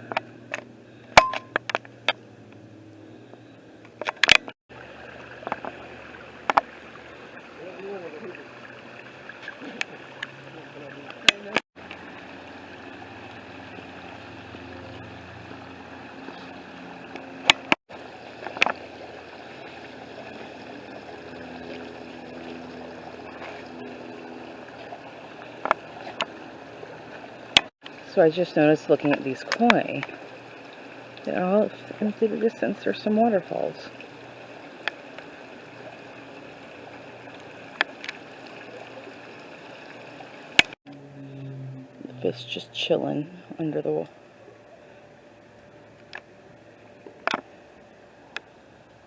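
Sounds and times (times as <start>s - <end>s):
faint steady hum: 0.0s - 49.0s
waterfall running water: 4.7s - 40.8s.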